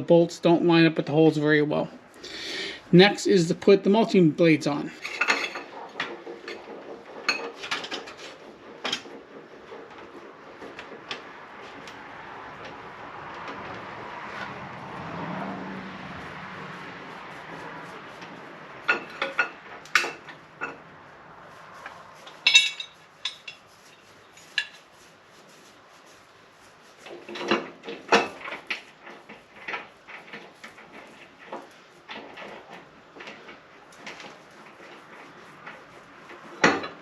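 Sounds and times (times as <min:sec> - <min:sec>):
steady rushing noise: 0:00.0 - 0:27.2
metal tools clinking: 0:04.9 - 0:05.7, 0:22.4 - 0:23.6.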